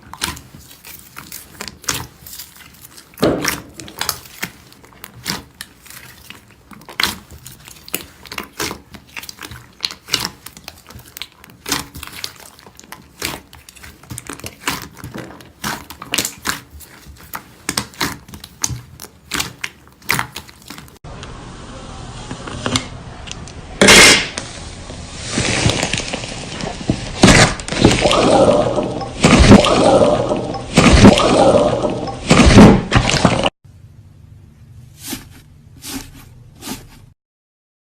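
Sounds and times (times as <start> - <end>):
slime crackling and popping: 0.0 - 21.0
wet squelches: 0.0 - 21.0, 25.4 - 33.5.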